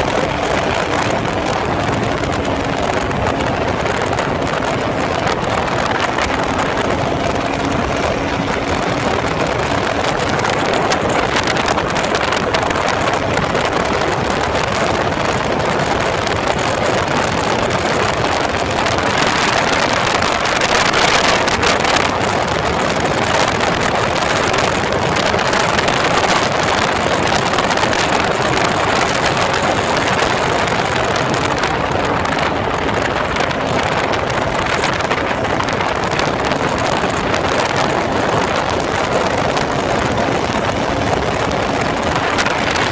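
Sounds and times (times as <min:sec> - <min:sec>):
motorcycle engine drone: 0:00.0 - 0:42.9
wind buffeting microphone: 0:00.0 - 0:42.9.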